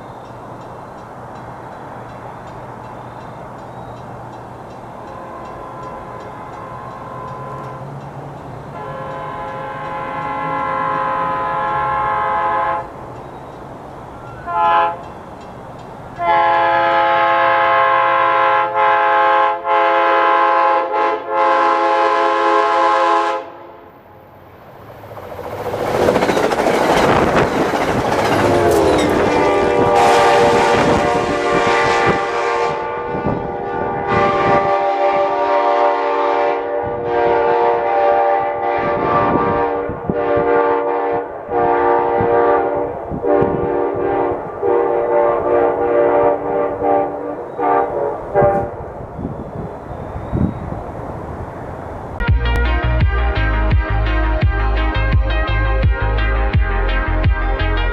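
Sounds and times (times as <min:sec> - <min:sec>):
train passing with wheel clatter: 0:00.0 - 0:52.6
train horn blasts: 0:05.0 - 0:08.0, 0:08.7 - 0:13.0, 0:14.2 - 0:15.2, 0:16.2 - 0:24.2, 0:28.3 - 0:48.8.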